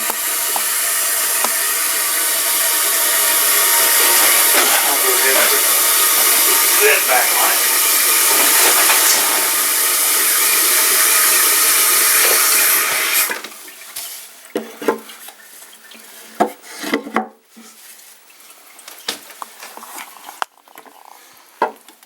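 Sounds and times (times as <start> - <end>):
toilet fill valve hissing: 0.0 - 16.4.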